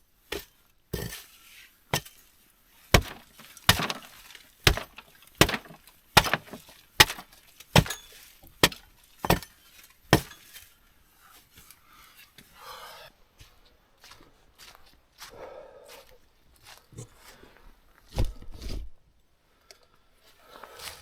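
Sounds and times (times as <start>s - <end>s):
wood being chopped: 0.3s - 1.2s, 2.9s - 9.5s, 10.1s - 10.4s.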